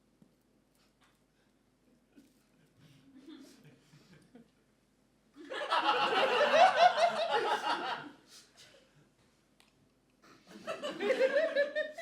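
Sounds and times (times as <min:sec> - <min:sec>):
people laughing: 0:05.4 - 0:08.2, 0:10.5 - 0:12.0.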